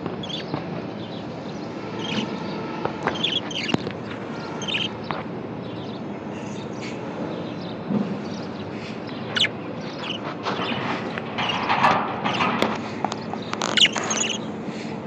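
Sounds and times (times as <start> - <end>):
budgerigar chirping: 0.2 - 0.5, 2.0 - 2.4, 3.1 - 3.8, 4.4 - 5.0, 9.3 - 10.8, 13.6 - 14.5.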